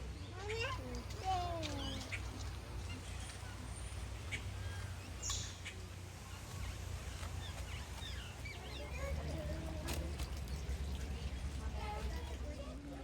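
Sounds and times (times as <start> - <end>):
birds chirping: 0.5 - 12.4.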